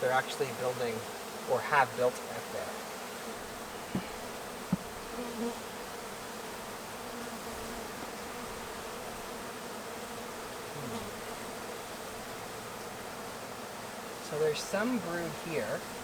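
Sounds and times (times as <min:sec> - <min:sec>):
bees buzzing: 0:00.0 - 0:16.0
short knocks: 0:03.9 - 0:04.9.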